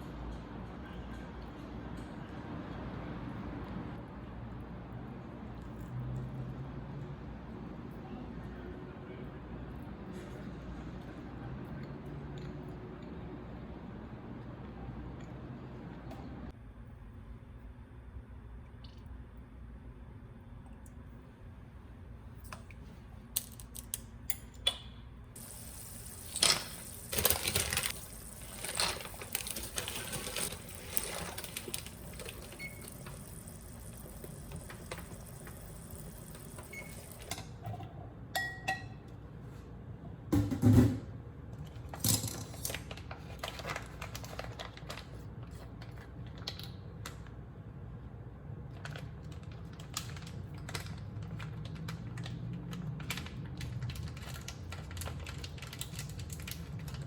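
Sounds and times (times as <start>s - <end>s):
running water hiss: 25.4s - 37.3s.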